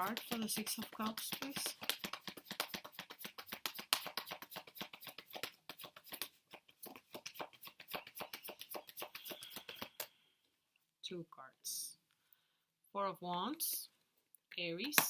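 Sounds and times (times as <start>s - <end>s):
cards being shuffled: 0.0s - 10.1s.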